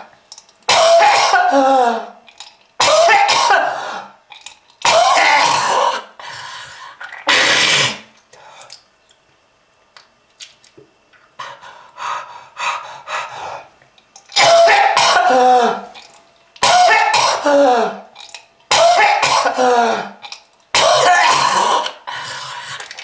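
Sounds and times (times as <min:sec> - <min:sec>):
person coughing hard: 0:00.7 - 0:02.2, 0:02.8 - 0:03.9, 0:04.8 - 0:06.1, 0:07.3 - 0:08.1, 0:14.4 - 0:15.9, 0:16.6 - 0:18.1, 0:18.7 - 0:22.0.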